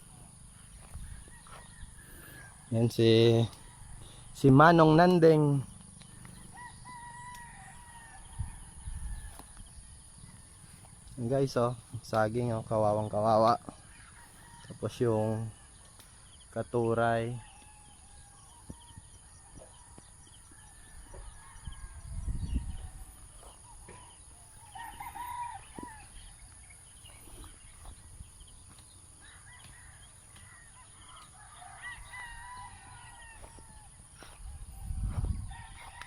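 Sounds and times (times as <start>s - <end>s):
rooster crowing: 0.0s - 4.8s, 6.4s - 9.7s, 17.4s - 36.0s
low rumbles on microphone: 34.4s - 35.8s.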